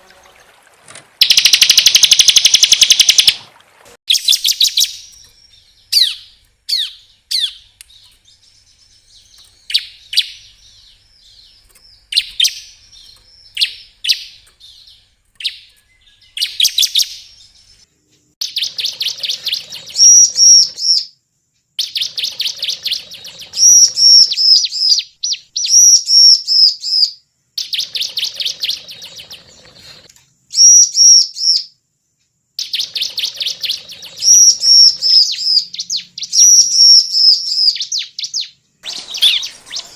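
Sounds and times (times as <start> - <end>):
bird chirps: 1.2 - 3.4, 4.1 - 31.8, 32.6 - 39.9
rapid chattering bird trills: 1.2 - 3.4, 18.4 - 21.0, 21.8 - 25.0, 27.6 - 30.1.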